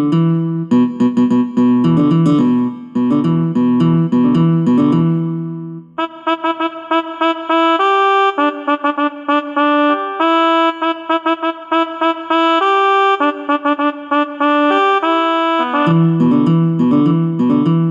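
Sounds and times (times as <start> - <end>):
brass-like ringtone melody: 6.0 - 16.5.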